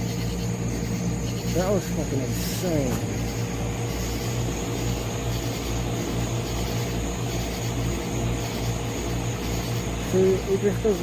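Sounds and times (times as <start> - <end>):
aircraft engine drone: 0.0 - 11.0.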